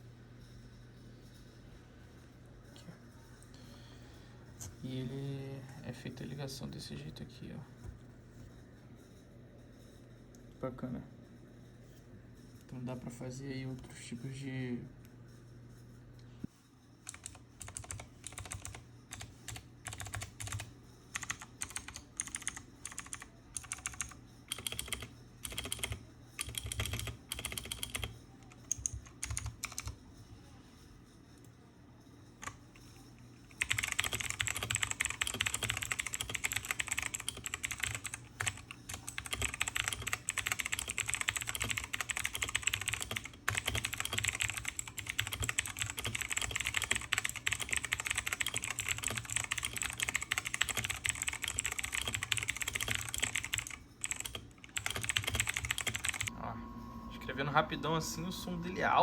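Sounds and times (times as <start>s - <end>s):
clicky mechanical keyboard typing: 17.0s - 30.0s, 32.4s - 32.6s, 33.4s - 56.3s.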